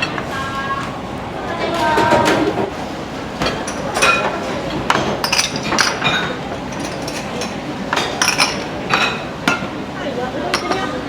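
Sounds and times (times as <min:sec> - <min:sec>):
dishes clinking together: 0:03.4 - 0:09.8, 0:10.5 - 0:11.0.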